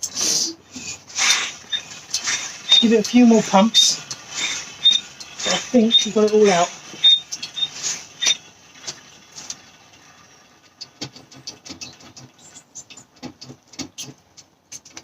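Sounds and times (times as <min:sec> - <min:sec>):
oil extractor slurping air: 0:00.0 - 0:12.5.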